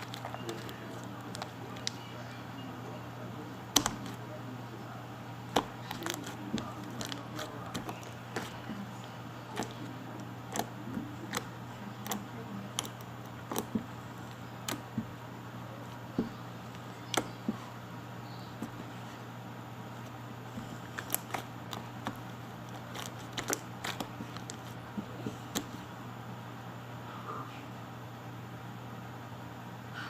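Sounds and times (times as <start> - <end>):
steady low hum: 0.0 - 30.0
slime clicking and popping: 3.7 - 4.2, 5.5 - 8.5, 10.5 - 10.7, 11.3 - 12.2, 12.8 - 13.8, 22.8 - 24.7.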